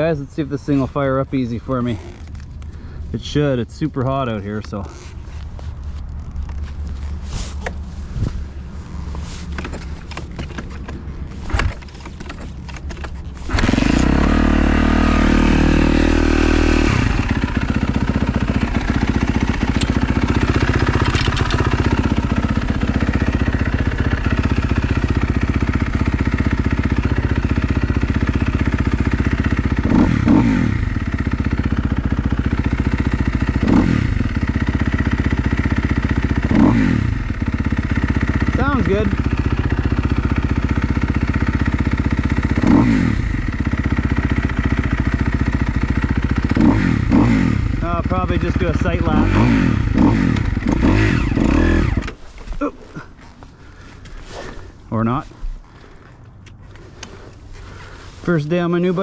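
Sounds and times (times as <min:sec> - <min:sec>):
motorcycle engine revving and idling: 0:00.0 - 0:59.0
clicking and knocking: 0:20.9 - 0:21.8.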